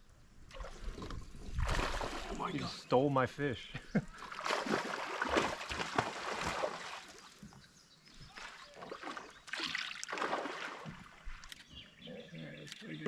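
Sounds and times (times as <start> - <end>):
water splashing around a kayak: 0.4 - 2.8, 4.1 - 11.8.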